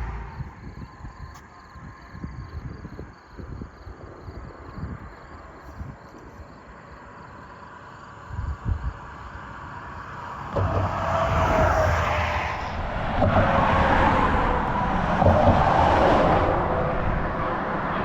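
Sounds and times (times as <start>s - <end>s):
car driving by: 9.9s - 18.0s.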